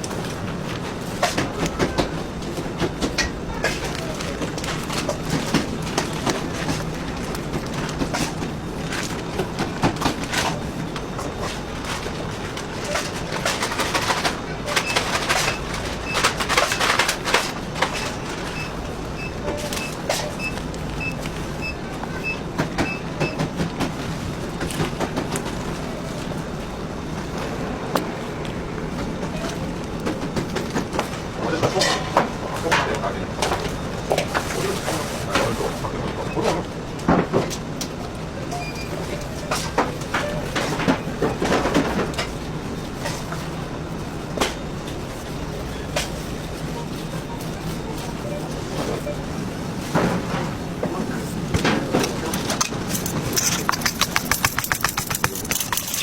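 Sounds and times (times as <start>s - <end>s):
machinery humming: 0.0s - 56.0s
trays clacking and knocking: 0.3s - 21.1s, 30.0s - 35.7s, 38.6s - 43.4s, 49.8s - 56.0s
clatter and knocking: 51.6s - 56.0s.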